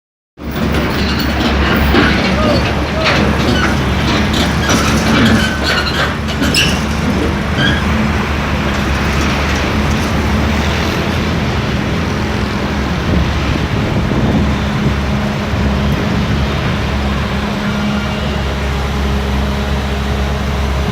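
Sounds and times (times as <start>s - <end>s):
excavator diesel engine running: 0.4s - 20.9s
metallic clicks and squeaks: 0.6s - 8.0s.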